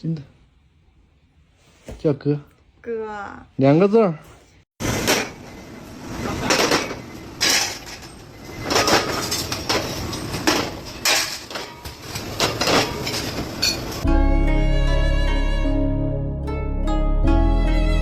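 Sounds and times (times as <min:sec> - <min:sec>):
hard objects clattering: 0:06.4 - 0:14.0
bowed string music: 0:14.0 - 0:18.0.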